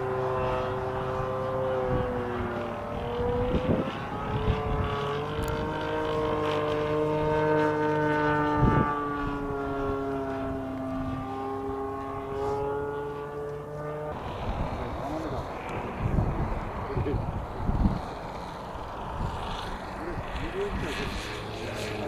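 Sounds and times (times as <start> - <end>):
model airplane motor whine: 0.0 - 22.0
wind thumping on microphone: 14.2 - 21.3.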